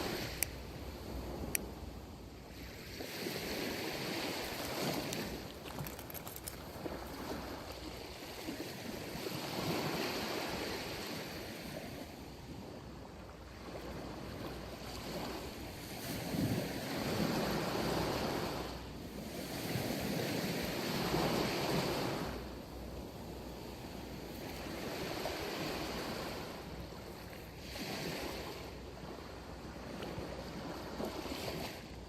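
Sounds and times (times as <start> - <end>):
sea waves breaking on beach: 0.0 - 32.0.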